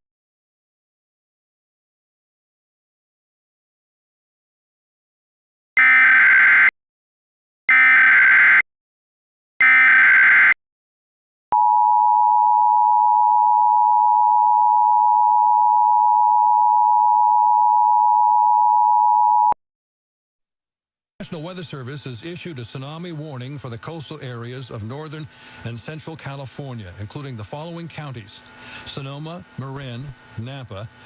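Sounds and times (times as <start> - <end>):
steady dual tone: 5.8 - 6.7, 7.7 - 8.6, 9.6 - 10.6.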